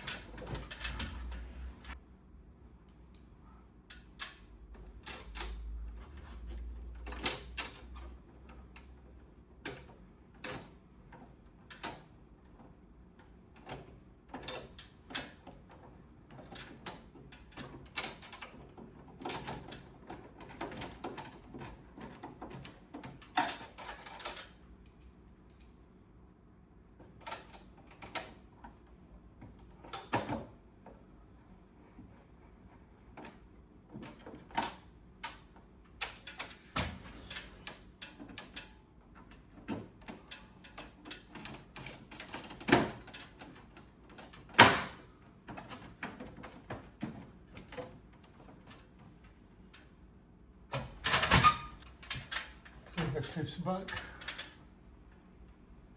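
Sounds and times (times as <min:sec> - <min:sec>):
plastic parts clicking and knocking: 0:09.6 - 0:25.7, 0:33.1 - 0:49.9.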